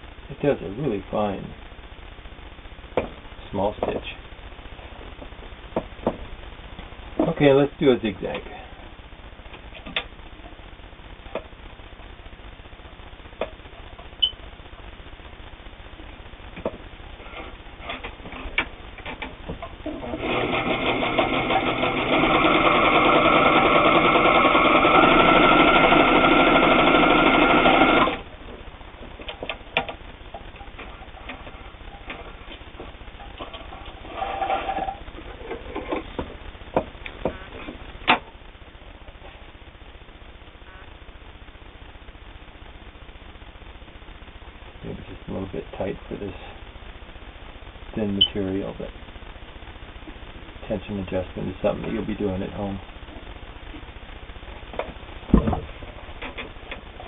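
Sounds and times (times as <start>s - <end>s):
sewing machine stitching: 19.9s - 28.2s, 34.1s - 35.0s
sharp clicks and knocks: 29.0s - 32.6s.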